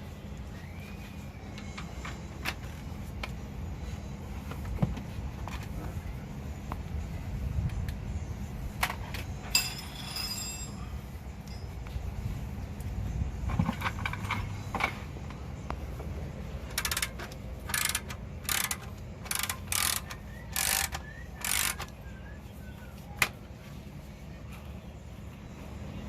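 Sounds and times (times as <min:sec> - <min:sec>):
metal clinks: 0:09.4 - 0:12.1
ratchet wrench clicking: 0:16.6 - 0:22.0.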